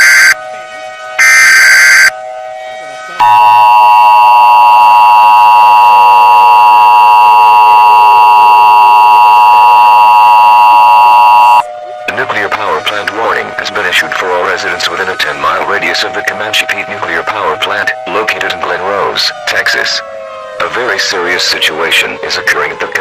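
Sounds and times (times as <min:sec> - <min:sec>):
digital header data screech: 0:00.0 - 0:00.4, 0:01.2 - 0:02.1
two-tone attention signal: 0:00.0 - 0:00.4, 0:01.2 - 0:02.1, 0:03.2 - 0:11.7.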